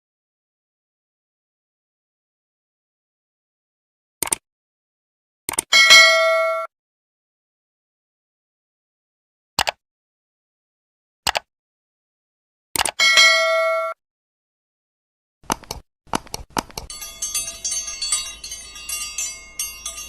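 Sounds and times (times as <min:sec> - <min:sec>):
notification bell ding: 0:05.8 - 0:06.7, 0:13.0 - 0:14.0, 0:16.9 - 0:20.0
mouse clicks: 0:09.6 - 0:09.8, 0:11.3 - 0:11.5, 0:12.8 - 0:13.0, 0:15.5 - 0:16.9.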